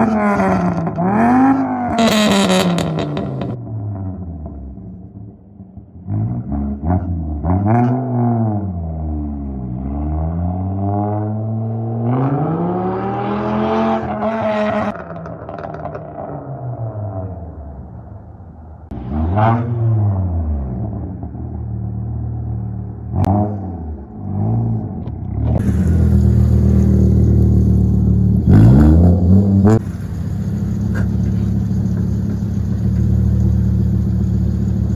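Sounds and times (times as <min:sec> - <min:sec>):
car engine revving: 0:00.0 - 0:04.2, 0:22.3 - 0:34.9
exhaust crackles: 0:25.6 - 0:34.9.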